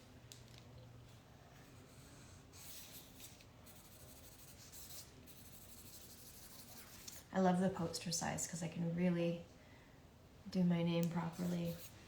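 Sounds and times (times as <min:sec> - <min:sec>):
pen scratching on paper: 0:01.8 - 0:07.2.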